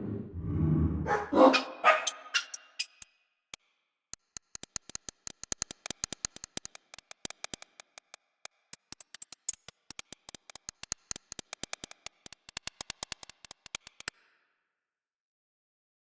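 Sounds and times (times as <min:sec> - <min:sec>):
rapid sharp clicks: 0:02.0 - 0:14.1.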